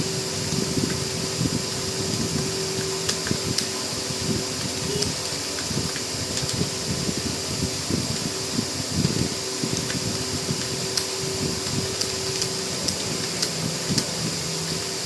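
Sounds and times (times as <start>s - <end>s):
steady fan hum: 0.0s - 15.0s
fast keyboard typing: 9.0s - 14.8s.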